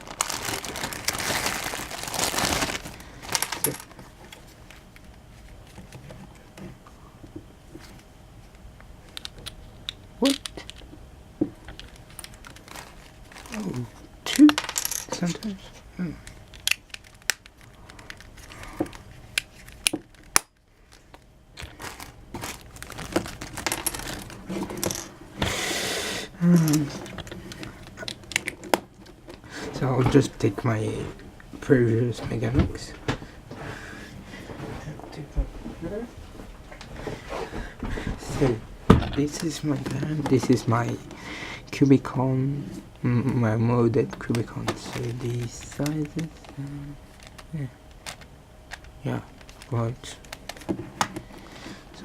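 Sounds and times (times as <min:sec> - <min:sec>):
plastic packaging crinkling: 0:00.0 - 0:04.0, 0:11.7 - 0:14.4, 0:16.4 - 0:24.9, 0:44.8 - 0:50.8.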